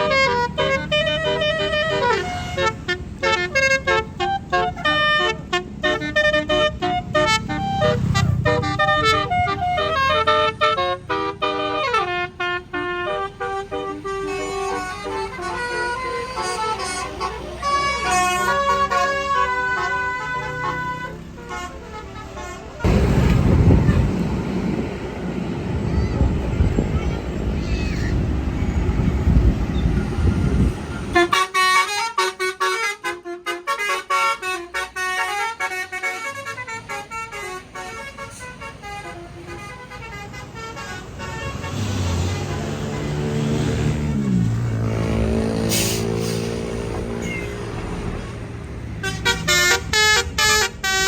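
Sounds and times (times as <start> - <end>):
musical bus horn playing a tune: 0.0 - 24.8, 29.0 - 51.0
low engine rumble: 0.0 - 31.7.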